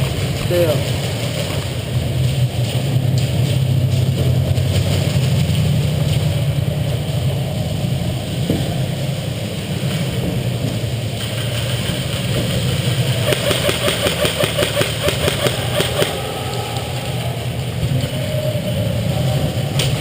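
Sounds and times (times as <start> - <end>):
steady low hum: 0.0 - 20.0
electric gun firing full-auto: 12.9 - 16.2.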